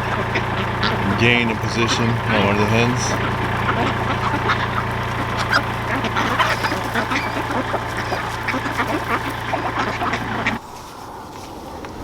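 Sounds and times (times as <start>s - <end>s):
ducks quacking: 0.0s - 10.6s
steady low hum: 0.0s - 10.6s
chickens calling: 0.0s - 10.9s.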